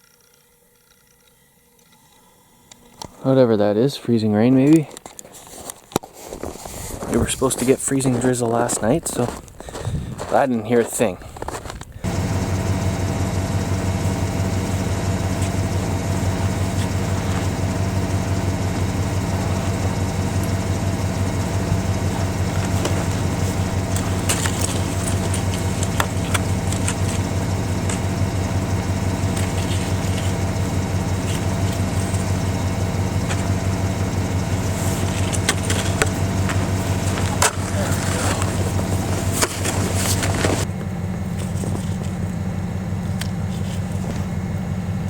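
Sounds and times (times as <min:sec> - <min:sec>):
engine idling: 0:11.0 - 0:45.0.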